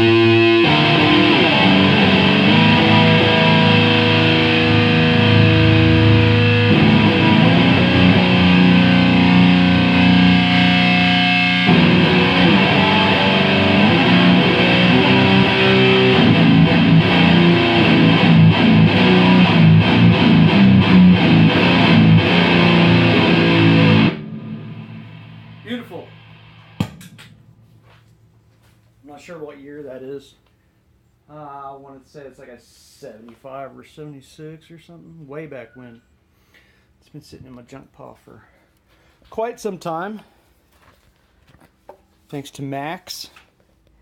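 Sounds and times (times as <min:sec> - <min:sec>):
distorted electric guitar: 0:00.0 - 0:28.4.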